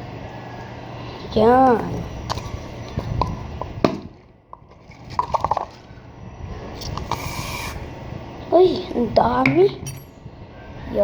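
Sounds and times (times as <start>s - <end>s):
bottle squeaks and clicks: 6.8s - 7.8s.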